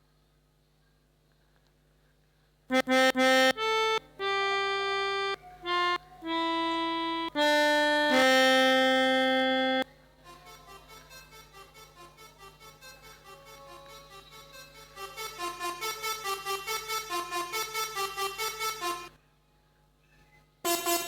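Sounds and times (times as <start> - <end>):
melodica playing a tune: 2.7 - 19.2, 20.7 - 21.0.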